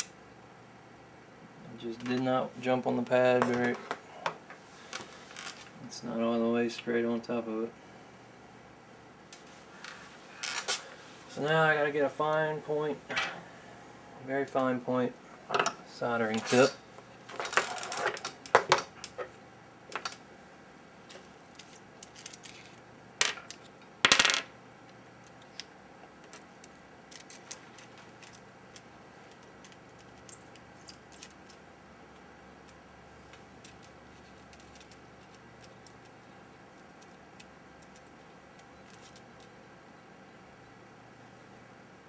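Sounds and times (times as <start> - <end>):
metal tools clinking on workbench: 22.1 - 24.4.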